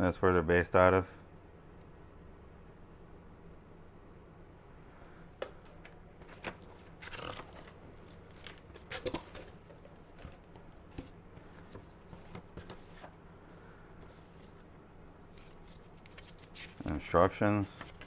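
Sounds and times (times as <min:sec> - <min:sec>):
packaging rustling: 0:05.3 - 0:14.7, 0:15.3 - 0:16.8.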